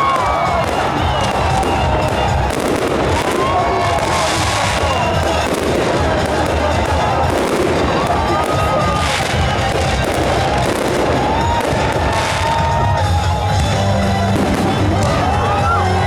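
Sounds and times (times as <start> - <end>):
fireworks bangs and crackling: 0.0 - 16.0
music playing: 0.0 - 16.0.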